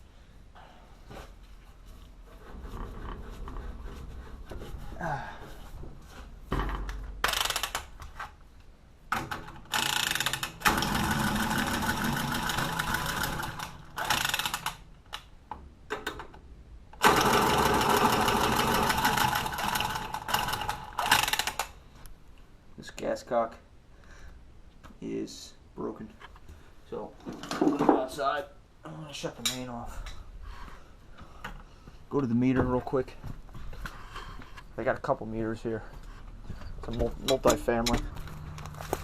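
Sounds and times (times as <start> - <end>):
small power tool running: 9.8 - 14.7.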